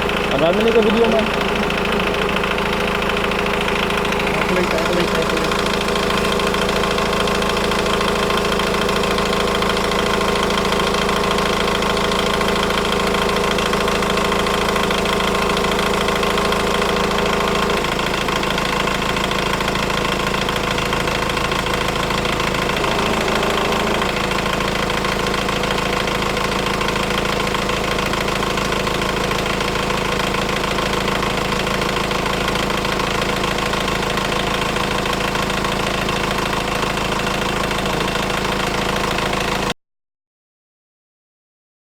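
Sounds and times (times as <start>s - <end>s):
car engine idling: 0.0s - 39.6s.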